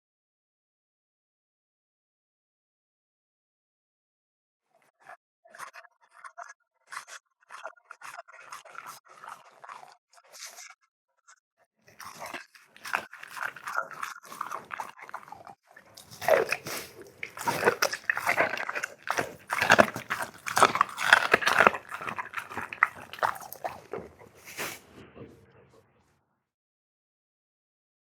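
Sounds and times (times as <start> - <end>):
pet chewing and crunching: 6.9 - 10.6, 11.9 - 24.9.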